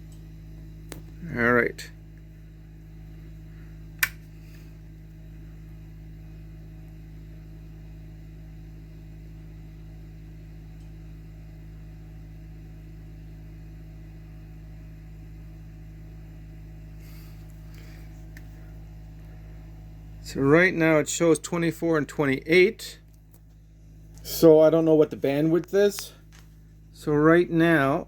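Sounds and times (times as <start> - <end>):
electrical mains hum: 0.0 - 28.0
sharp click: 4.0 - 4.2.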